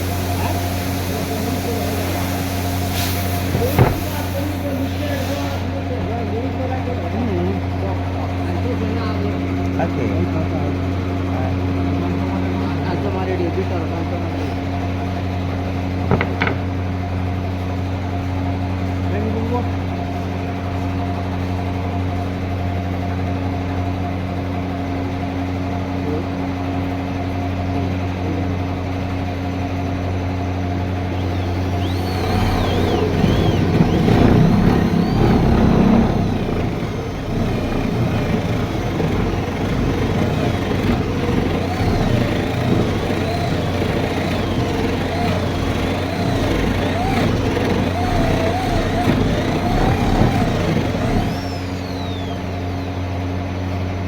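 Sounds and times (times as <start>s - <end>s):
machine cutting wood: 0.0s - 8.9s, 16.0s - 16.8s, 30.9s - 53.6s
electric motor humming: 0.0s - 10.2s, 30.8s - 53.8s.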